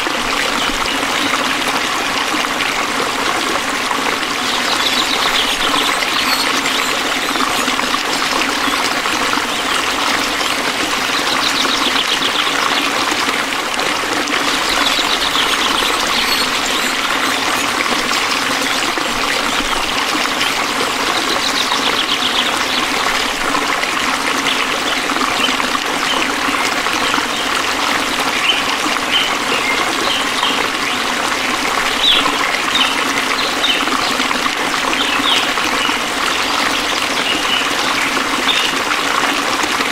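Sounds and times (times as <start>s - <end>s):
stream water babbling: 0.0s - 39.9s
short high chirps: 4.6s - 9.0s, 14.6s - 18.9s
pulsing insect trill: 4.6s - 10.4s, 14.6s - 19.2s.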